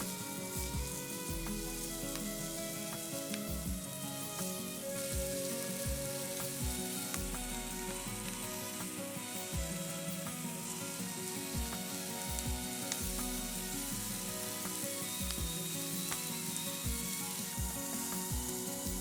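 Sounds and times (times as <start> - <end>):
background music: 0.0 - 19.0
meat sizzling over fire: 0.0 - 19.0.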